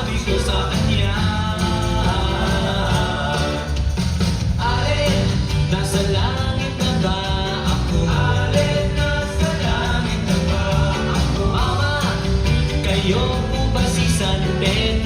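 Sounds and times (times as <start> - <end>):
singer over a band: 0.0 - 15.0.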